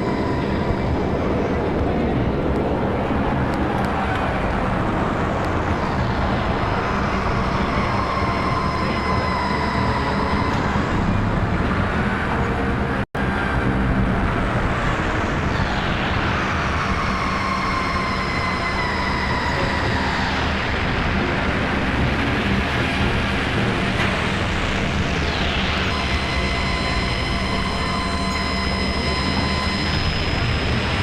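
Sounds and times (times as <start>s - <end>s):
synthesizer drone and noise: 0.0s - 31.0s
high synth tones gliding downward: 15.2s - 31.0s.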